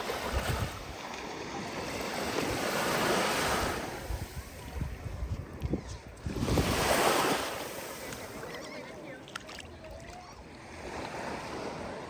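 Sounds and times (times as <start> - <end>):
ocean waves breaking: 0.0 - 5.2, 6.2 - 12.0
wind buffeting microphone: 0.0 - 8.5.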